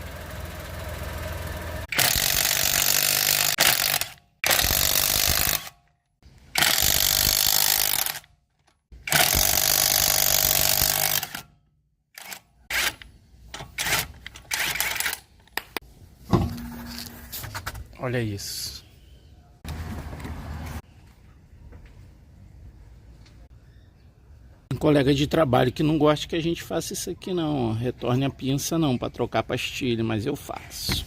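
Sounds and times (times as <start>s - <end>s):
impact wrench bursts: 1.9s - 5.8s, 6.5s - 8.3s, 9.0s - 11.5s.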